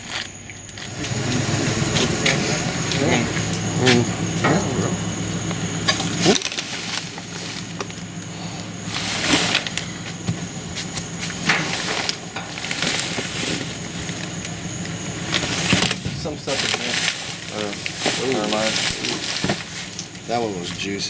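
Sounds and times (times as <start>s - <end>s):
steady low hum: 0.0s - 21.0s
trash rustling: 0.0s - 21.0s.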